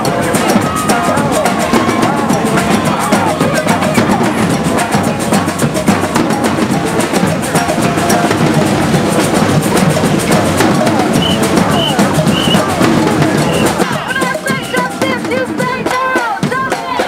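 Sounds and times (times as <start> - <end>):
snare and bass drums: 0.0 - 17.0.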